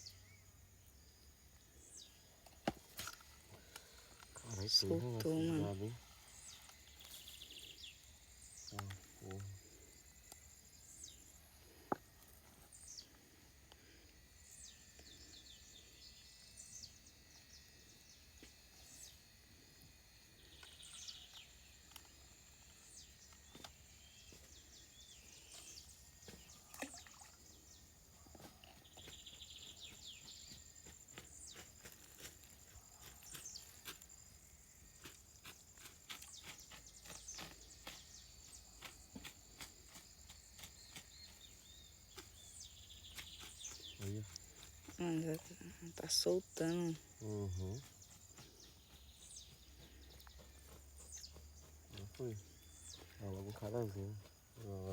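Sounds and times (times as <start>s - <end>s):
high insect trill: 0.0s - 54.9s
bird chirps: 20.4s - 31.7s, 36.2s - 54.9s.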